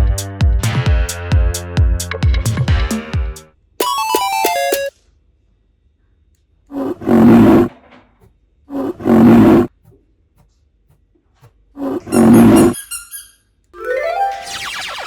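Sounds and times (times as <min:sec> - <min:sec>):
loud roar: 0:06.8 - 0:07.7, 0:08.8 - 0:09.7.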